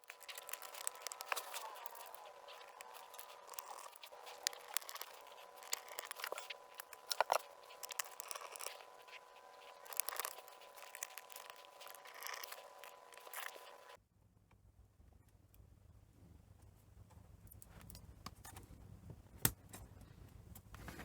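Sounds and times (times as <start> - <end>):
clicks and plastic film crinkling: 0.0 - 14.0
faint steady hum: 0.0 - 21.0.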